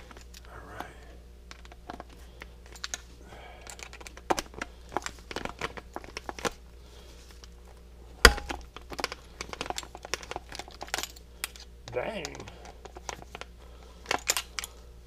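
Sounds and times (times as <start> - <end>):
sharp metal clank: 8.3 - 8.6
metal tools clicking and clattering: 8.4 - 11.6, 14.0 - 14.8.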